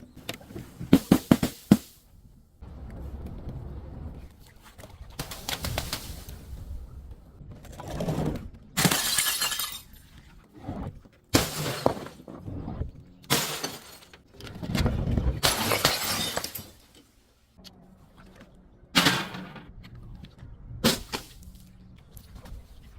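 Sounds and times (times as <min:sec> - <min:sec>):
glass bottles shattering: 0:08.8 - 0:10.1, 0:11.4 - 0:12.2, 0:13.3 - 0:14.2, 0:15.4 - 0:16.8
glass crunching: 0:08.8 - 0:10.1, 0:15.4 - 0:16.8.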